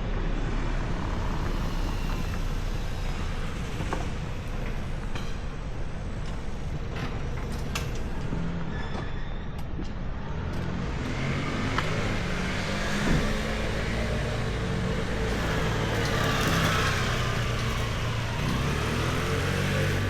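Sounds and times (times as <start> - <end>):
passing vehicles: 0.0 - 20.0
vehicle engine running: 10.6 - 20.0.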